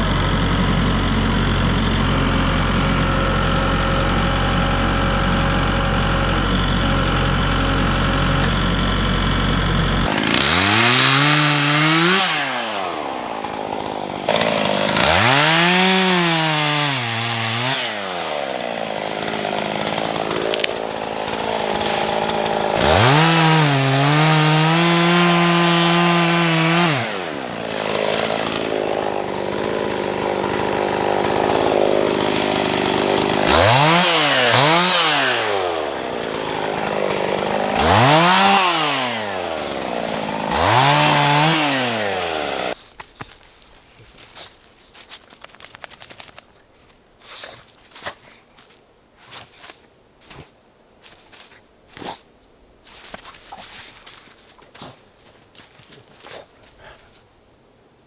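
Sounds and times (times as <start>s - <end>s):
tractor diesel engine running: 0.0s - 46.4s
chainsaw revving: 0.0s - 50.4s, 52.9s - 57.2s.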